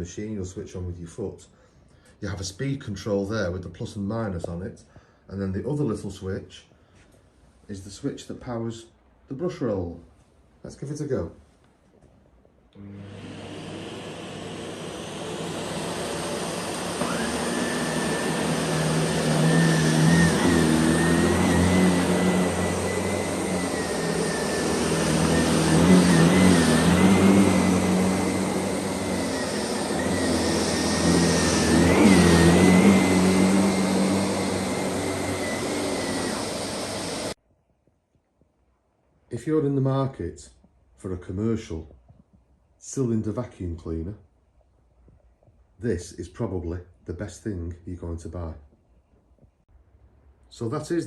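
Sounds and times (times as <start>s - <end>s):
vacuum cleaner motor spinning up: 12.8s - 37.4s.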